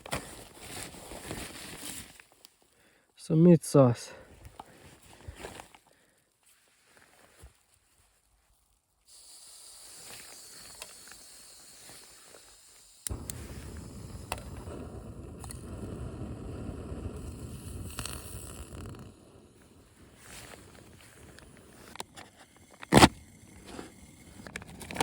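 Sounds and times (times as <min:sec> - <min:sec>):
camping stove hissing: 0:09.0 - 0:25.0
stove burner rushing: 0:09.2 - 0:25.0.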